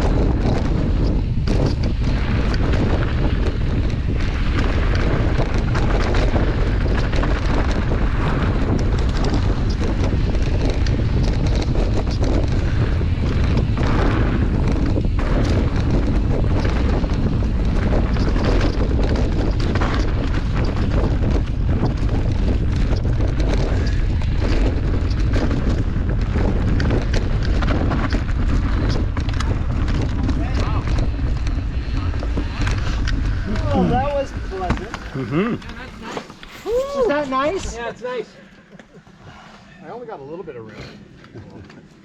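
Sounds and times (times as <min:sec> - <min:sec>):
bike clicks and rattles: 0:00.0 - 0:37.8
wind buffeting microphone: 0:00.0 - 0:42.0.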